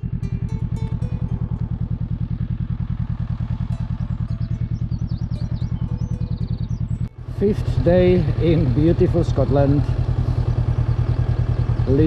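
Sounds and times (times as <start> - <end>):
motorcycle engine idling: 0.0 - 12.0
faint bird chirps: 4.3 - 7.1.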